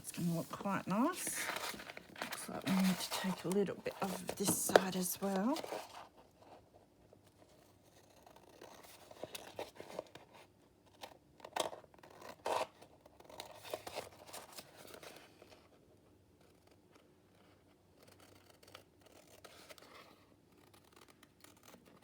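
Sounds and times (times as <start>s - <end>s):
paper rustling: 0.0s - 6.1s.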